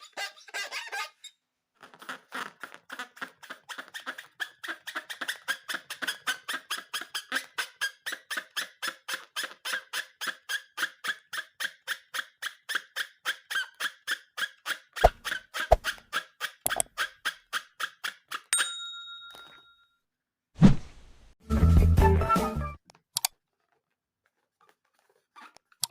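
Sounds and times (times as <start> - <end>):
rubber balloon squeaking: 0.0 - 8.2, 15.0 - 16.1, 16.7 - 17.0
ringing chime: 18.6 - 19.9.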